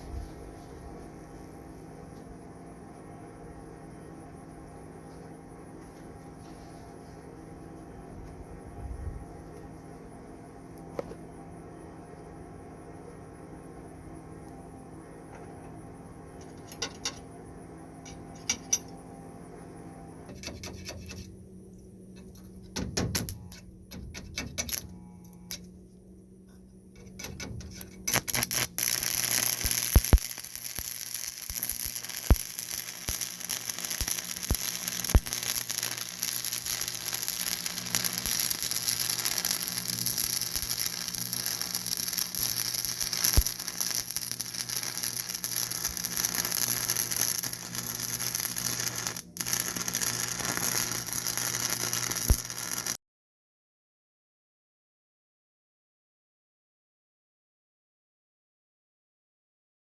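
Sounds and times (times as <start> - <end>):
arc welder crackling hiss: 0.0 - 2.8, 14.2 - 25.9, 26.5 - 53.0
welding pops: 22.2 - 25.8, 27.0 - 53.0.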